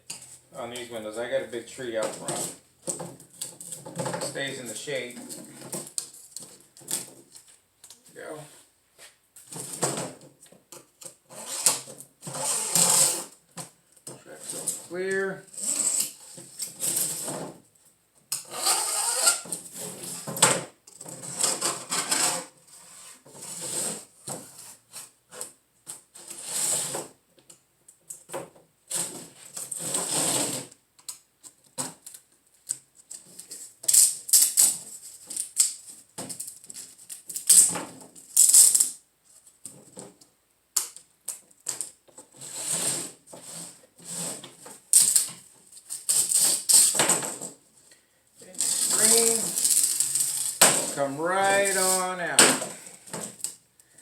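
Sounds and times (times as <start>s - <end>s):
screwdriver scraping rubber spline: 11.3s - 13.4s, 14.4s - 17.2s, 18.4s - 20.1s, 48.5s - 52.1s.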